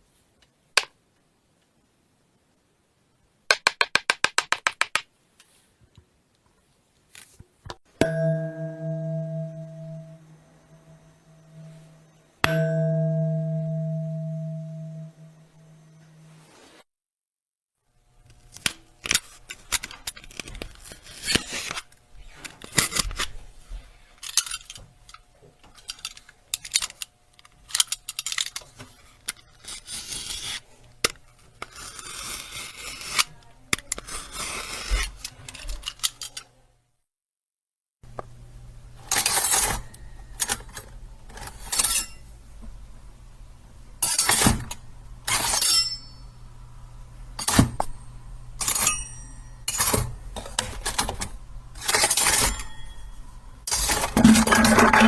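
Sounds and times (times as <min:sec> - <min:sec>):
metallic knife clicks and clinks: 0:48.6 - 0:49.9.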